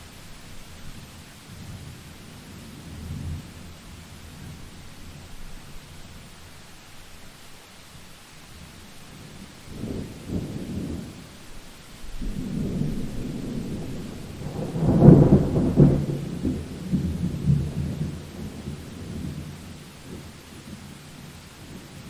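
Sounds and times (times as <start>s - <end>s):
thunder rumbling: 12.0s - 20.2s.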